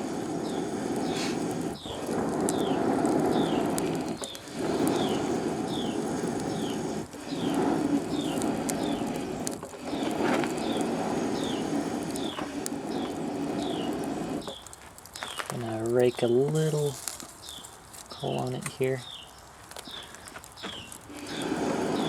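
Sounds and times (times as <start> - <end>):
forge air blast rushing: 0.0 - 14.7, 21.0 - 22.0.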